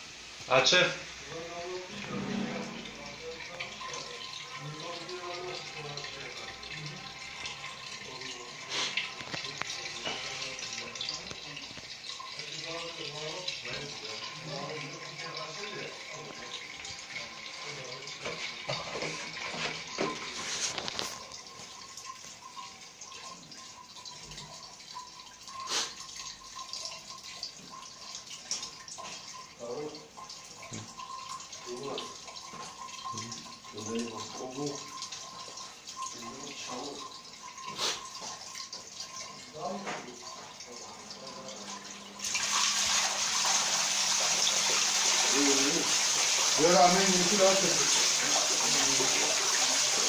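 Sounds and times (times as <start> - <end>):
water running through pipes: 0.0 - 50.0.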